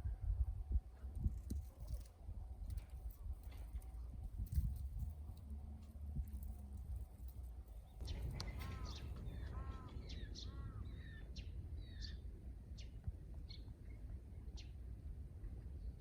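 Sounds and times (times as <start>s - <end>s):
low rumble: 3.9s - 12.6s
sparrow chirps: 7.8s - 14.8s.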